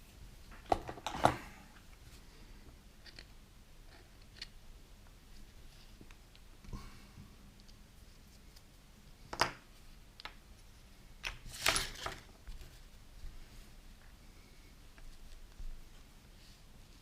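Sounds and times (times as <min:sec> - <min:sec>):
small parts clicking and scraping: 0:03.0 - 0:04.6.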